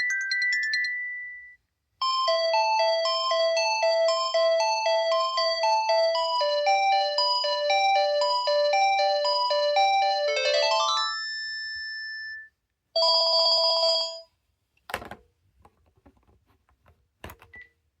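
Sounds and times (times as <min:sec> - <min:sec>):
phone ringtone melody: 0:00.0 - 0:14.2.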